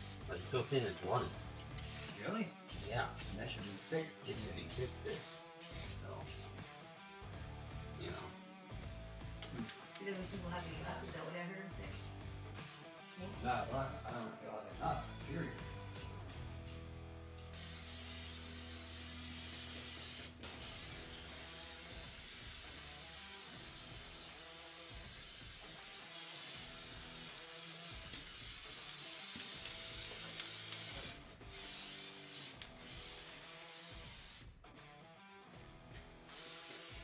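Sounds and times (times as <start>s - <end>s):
spray hiss: 0.0s - 6.6s, 10.2s - 11.3s, 11.9s - 14.3s, 16.0s - 34.5s, 36.3s - 37.0s.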